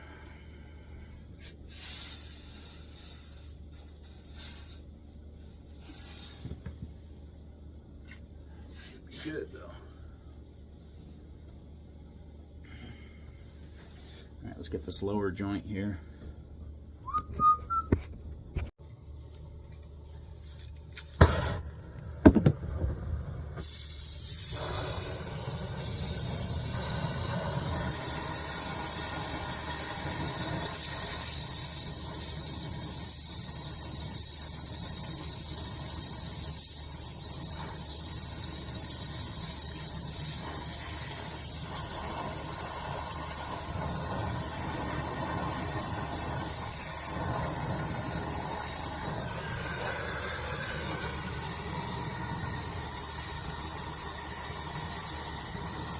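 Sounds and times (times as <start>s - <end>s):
torch flame hissing: 1.3s - 5.0s, 5.6s - 6.7s, 21.1s - 55.9s.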